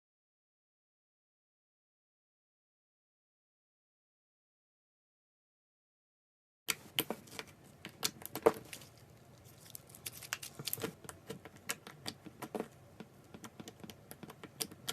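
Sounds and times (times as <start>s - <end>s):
slime squishing with sticky clicks: 6.7s - 14.9s.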